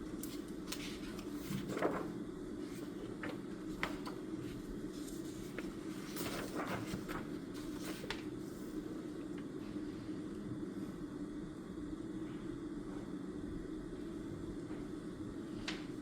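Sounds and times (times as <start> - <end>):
low room hum: 0.0 - 16.0
paper and pen rustling: 0.2 - 8.8.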